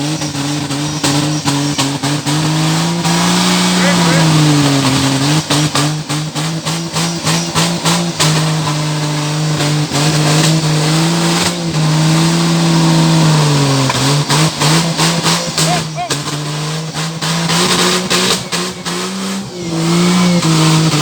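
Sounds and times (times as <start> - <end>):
off-road buggy engine running hard: 0.0 - 21.0.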